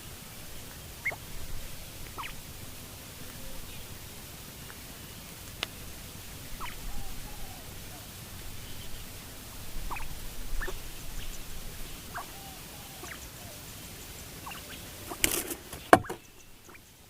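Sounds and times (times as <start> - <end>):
small animal squeaking: 2.2 - 2.4, 6.6 - 7.5, 9.9 - 10.8, 14.4 - 16.8.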